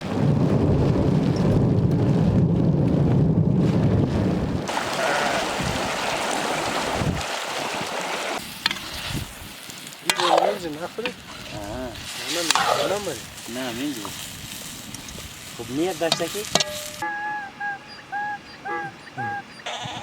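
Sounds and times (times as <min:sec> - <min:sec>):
low rumble of wind: 0:00.0 - 0:04.9, 0:11.1 - 0:17.0
hiss like rain: 0:04.7 - 0:17.0.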